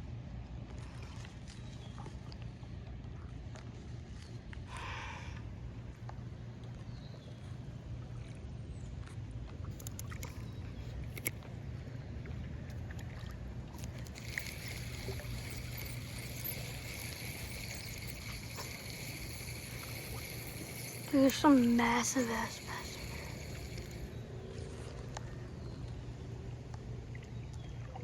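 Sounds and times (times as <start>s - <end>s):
paddle boat churning water: 12.1s - 24.8s
high-pitched buzz: 14.1s - 24.2s.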